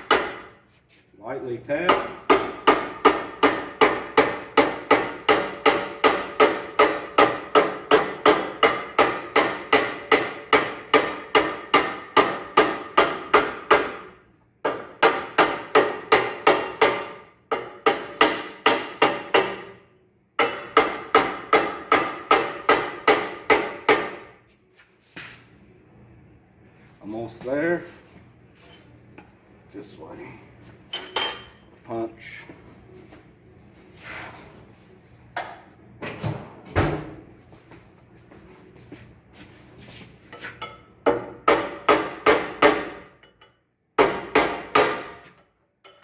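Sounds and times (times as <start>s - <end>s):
hammer tapping on metal: 0.0s - 0.5s, 1.8s - 14.0s, 14.6s - 19.7s, 20.4s - 24.3s.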